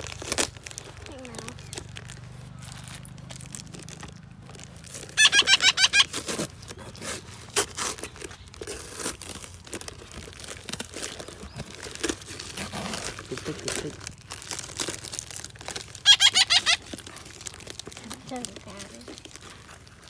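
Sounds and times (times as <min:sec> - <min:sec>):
crinkling and clicking handling noise: 0:00.0 - 0:05.2, 0:06.0 - 0:20.0
parrot sharp calls: 0:05.0 - 0:06.6, 0:15.9 - 0:17.1.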